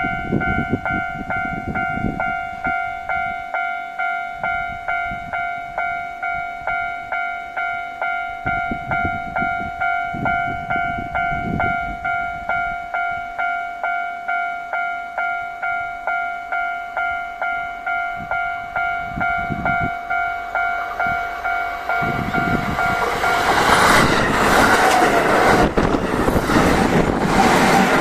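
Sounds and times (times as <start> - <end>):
level crossing warning bell ringing: 0.0 - 27.2
train wheels rumbling on rails: 18.2 - 28.0.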